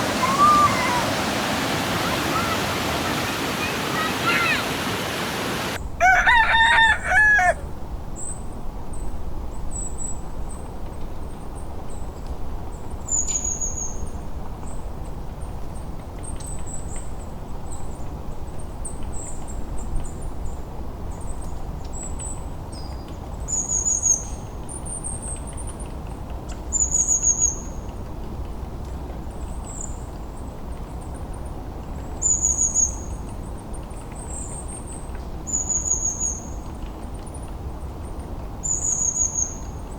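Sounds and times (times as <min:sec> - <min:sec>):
river rushing: 0:00.0 - 0:05.8
rooster crowing: 0:00.0 - 0:07.7.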